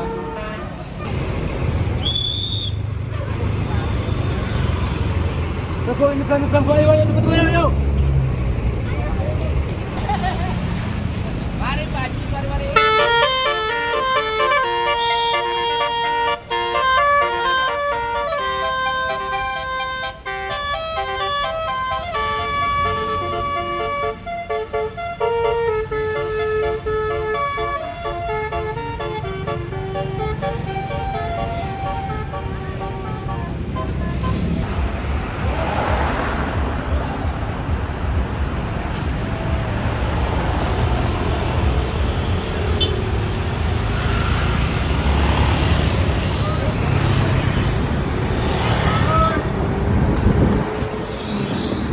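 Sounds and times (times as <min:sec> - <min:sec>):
bus horn playing a melody: 0:00.0 - 0:01.1, 0:12.7 - 0:34.7
bus engine rumbling: 0:00.0 - 0:51.9
road traffic noise: 0:00.0 - 0:51.9.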